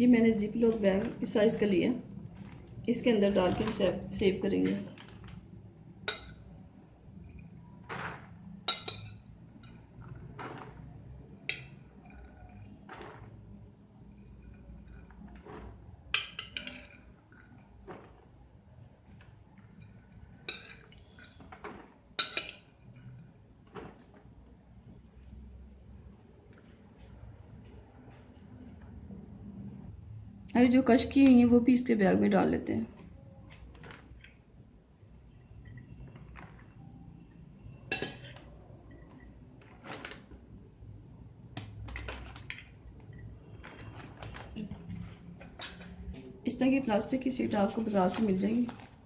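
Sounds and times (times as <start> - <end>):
kitchenware clinking and knocking: 6.0 - 6.5, 7.8 - 13.3, 20.5 - 22.7, 37.9 - 39.1, 41.8 - 46.1
plastic bag rustling: 7.7 - 8.6, 12.8 - 13.7, 47.4 - 49.0.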